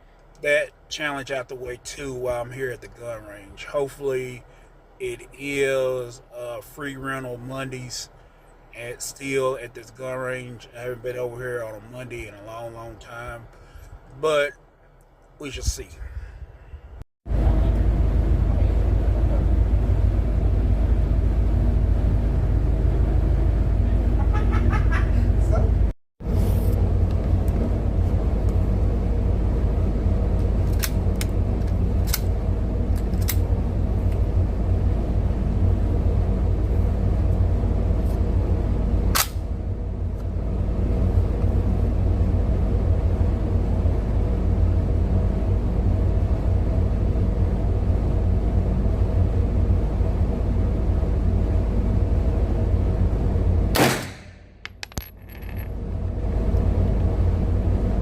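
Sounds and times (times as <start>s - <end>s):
car engine idling: 26.5s - 53.8s.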